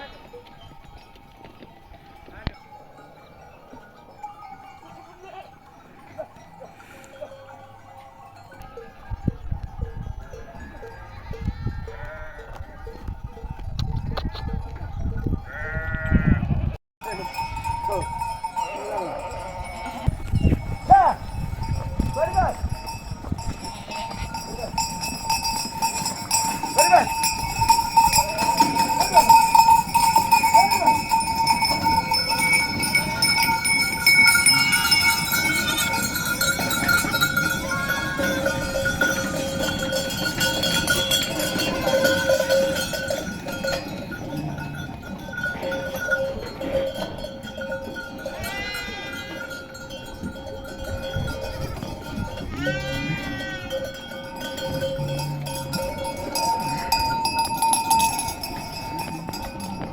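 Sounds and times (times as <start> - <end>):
sheep bells jangling: 0.0 - 16.4, 17.0 - 59.9
sheep bleating: 10.7 - 12.8, 15.5 - 17.6, 48.3 - 49.6, 52.5 - 53.8.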